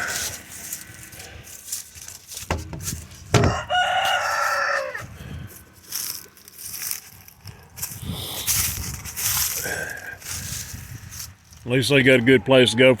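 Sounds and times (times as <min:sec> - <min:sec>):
sharp knocks: 0:02.5 - 0:03.6
rooster crowing: 0:03.4 - 0:05.1.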